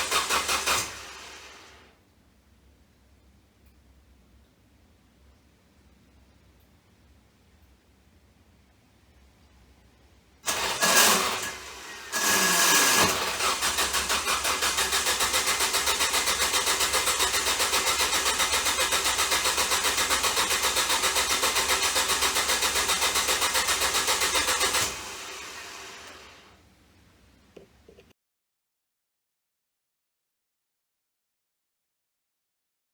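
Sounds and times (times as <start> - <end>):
starter motor cranking engine: 0.0 - 1.8, 10.4 - 26.5.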